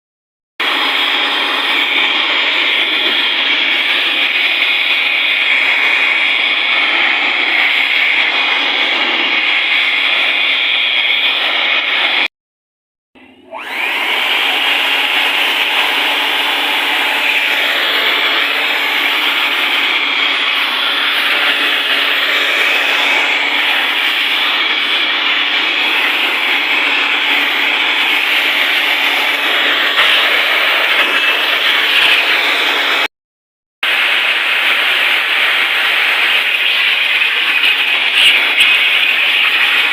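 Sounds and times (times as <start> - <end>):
electric air blower running: 0.6 - 12.3, 13.2 - 33.1, 33.8 - 39.9.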